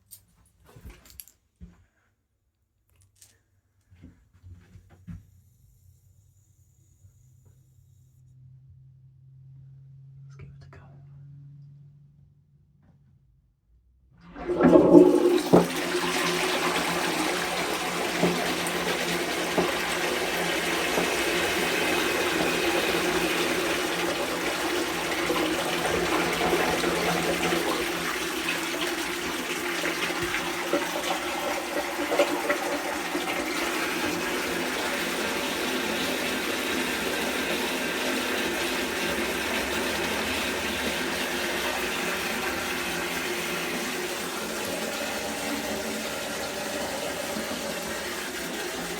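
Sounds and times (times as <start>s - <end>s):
cistern refilling: 14.2s - 48.9s
toilet flushing: 14.2s - 48.9s.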